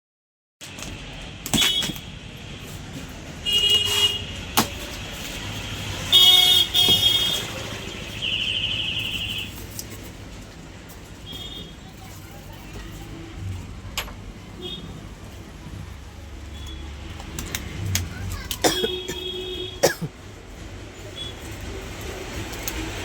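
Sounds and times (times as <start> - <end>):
traffic rumble: 0.6 - 23.0
vehicle horn toots: 3.4 - 4.4, 6.0 - 9.6.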